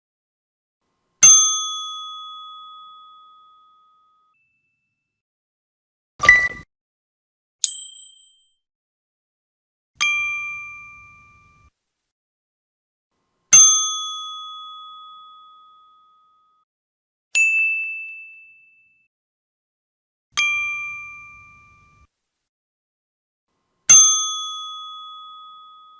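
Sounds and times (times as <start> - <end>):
bright bell-like dings: 1.2 - 5.2, 7.6 - 8.6, 10.0 - 11.7, 13.5 - 16.6, 17.4 - 19.1, 20.4 - 22.1, 23.9 - 25.9.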